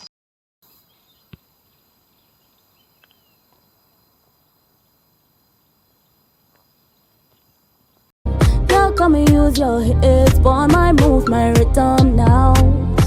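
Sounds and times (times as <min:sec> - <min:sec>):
insects chirring: 0:00.6 - 0:08.1.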